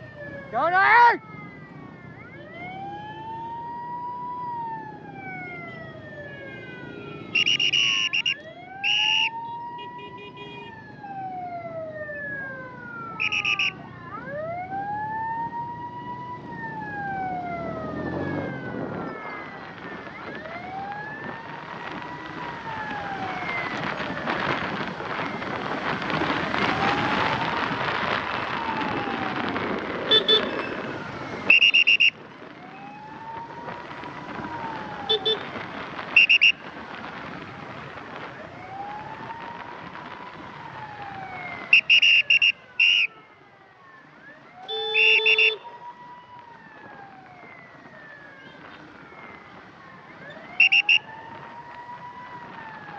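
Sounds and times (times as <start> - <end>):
ambulance siren wailing: 0.0 - 52.9
traffic noise: 0.0 - 52.9
vehicle horn beeps: 44.7 - 45.6.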